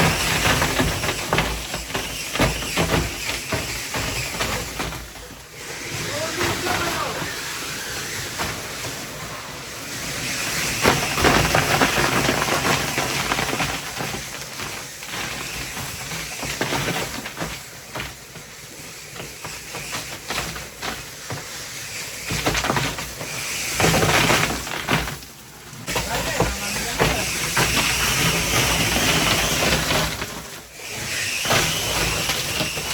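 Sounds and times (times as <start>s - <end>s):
crushed ice rushing and clattering: 0.0s - 32.9s
ice crushing machine running: 0.0s - 32.9s.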